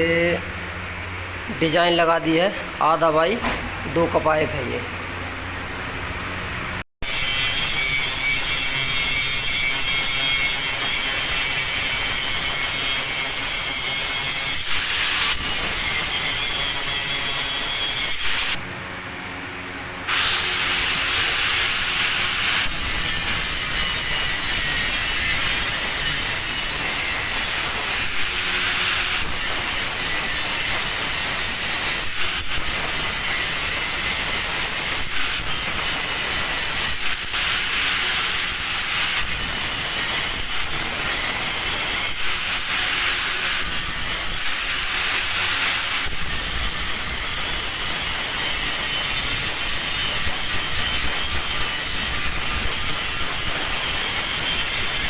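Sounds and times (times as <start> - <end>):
angle grinder grinding steel: 20.1 - 55.0.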